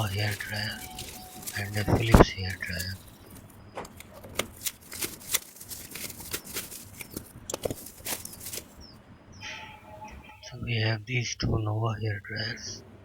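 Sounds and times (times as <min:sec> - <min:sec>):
objects clicking and tapping: 0:00.0 - 0:08.8.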